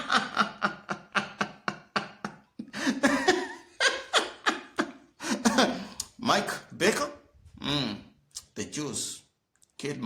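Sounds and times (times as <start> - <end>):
person laughing: 0.0 - 6.0.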